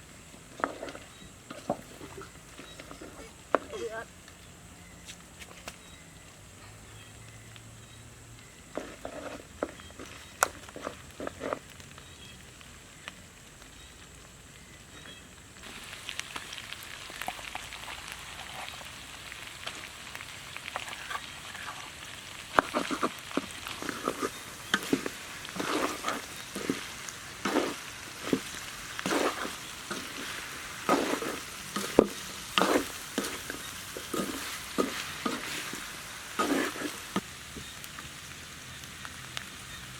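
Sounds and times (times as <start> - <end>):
utensil scraping and knocking pan: 0.5 - 3.7, 8.8 - 11.6, 22.6 - 37.2
food sizzling in a pan: 6.7 - 39.9.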